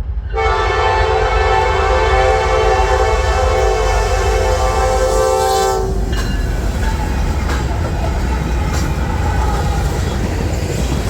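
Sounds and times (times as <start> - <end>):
train rumble: 0.0 - 11.0
locomotive air horn chord: 0.3 - 6.1
wheels clattering over rails: 5.9 - 11.0.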